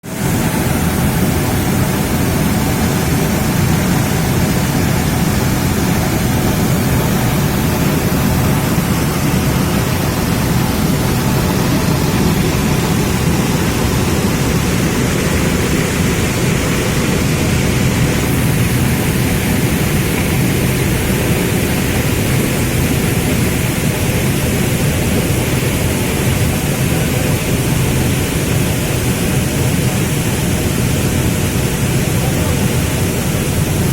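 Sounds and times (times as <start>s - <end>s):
waterfall roaring: 0.0s - 33.9s.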